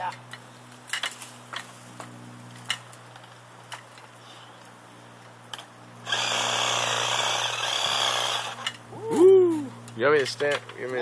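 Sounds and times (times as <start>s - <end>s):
reciprocating saw cutting wood: 6.0s - 8.8s.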